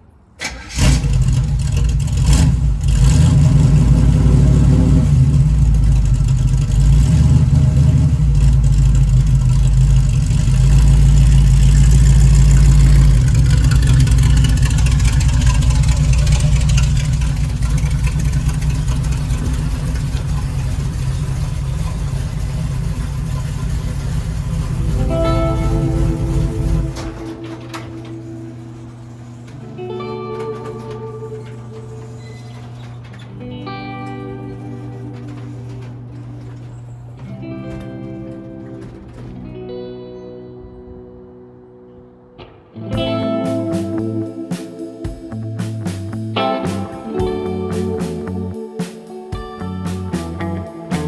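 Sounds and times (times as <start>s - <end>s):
car engine revving: 0.4s - 40.0s.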